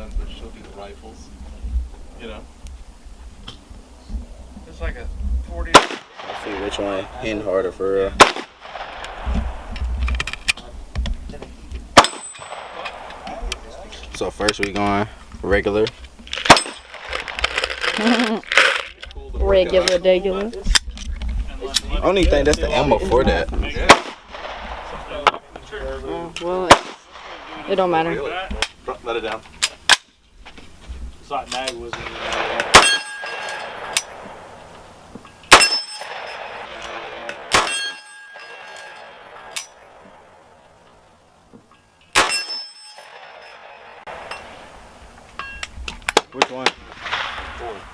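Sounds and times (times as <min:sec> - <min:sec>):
gunshots: 0:05.7 - 0:07.5, 0:08.1 - 0:09.7, 0:12.0 - 0:13.8, 0:16.4 - 0:17.6, 0:23.8 - 0:25.7, 0:26.6 - 0:28.0, 0:31.9 - 0:34.5, 0:35.5 - 0:40.3, 0:42.2 - 0:44.3, 0:46.2 - 0:47.9
gun handling clicks: 0:09.8 - 0:10.6, 0:16.3 - 0:19.2
metallic ringing: 0:12.0 - 0:12.9, 0:32.7 - 0:34.2, 0:35.3 - 0:37.0, 0:37.6 - 0:39.9, 0:41.7 - 0:44.6, 0:45.4 - 0:45.7.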